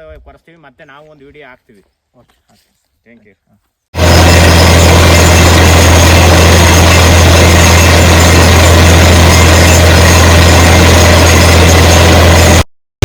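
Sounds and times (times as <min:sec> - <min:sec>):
large diesel engine running: 0:04.0 - 0:12.7.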